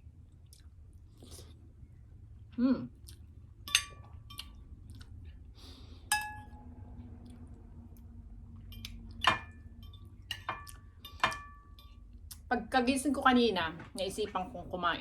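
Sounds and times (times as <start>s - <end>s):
utensil clinking against a dish: 3.7s - 4.5s, 6.1s - 6.6s, 8.6s - 12.0s.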